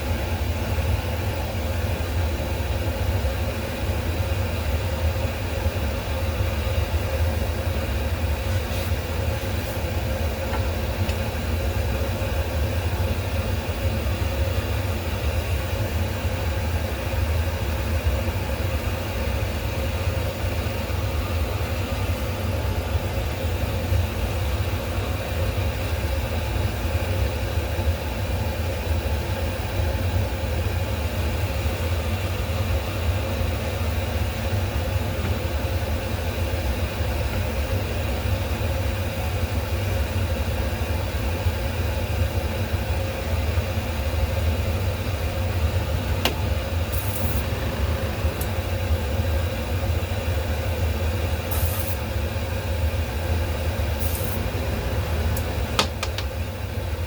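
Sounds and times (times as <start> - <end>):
low mechanical hum: 0.0 - 57.0
brief hiss: 51.5 - 52.0, 54.0 - 54.6.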